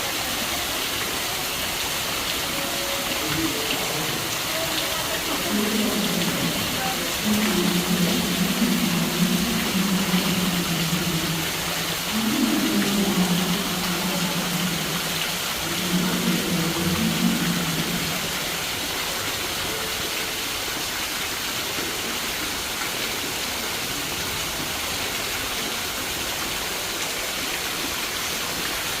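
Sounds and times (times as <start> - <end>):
steady rain falling: 0.0 - 29.0
low hum: 5.2 - 18.7.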